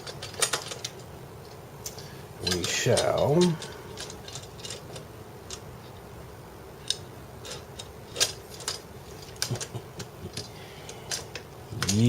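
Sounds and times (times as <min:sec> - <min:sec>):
small parts clicking: 0:00.0 - 0:06.0, 0:06.8 - 0:12.0.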